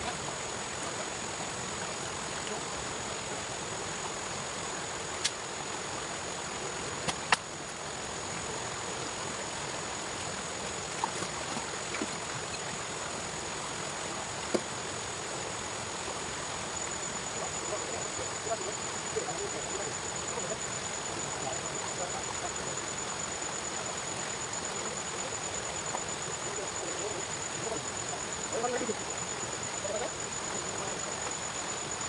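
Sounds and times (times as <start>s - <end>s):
flowing water rushing: 0.0s - 32.0s
high-pitched whine: 16.4s - 32.0s.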